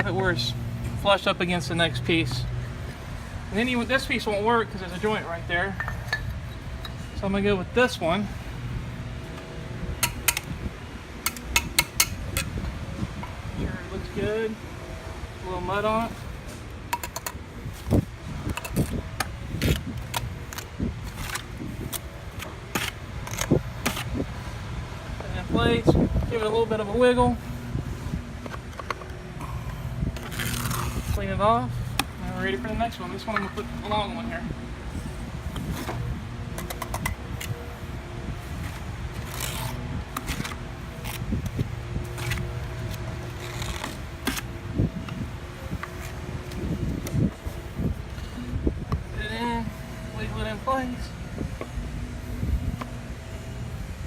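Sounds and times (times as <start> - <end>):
steady low rumble: 0.0 - 54.0.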